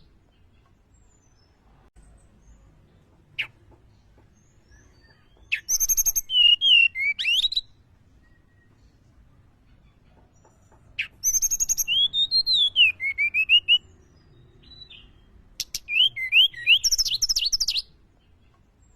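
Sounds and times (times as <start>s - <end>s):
bird whistled song: 4.4s - 9.0s, 11.0s - 18.0s.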